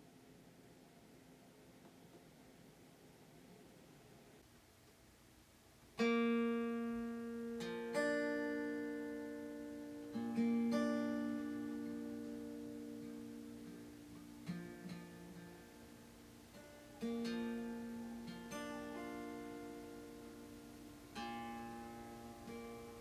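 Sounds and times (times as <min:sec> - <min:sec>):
acoustic guitar plucked chords: 0:06.0 - 0:23.0.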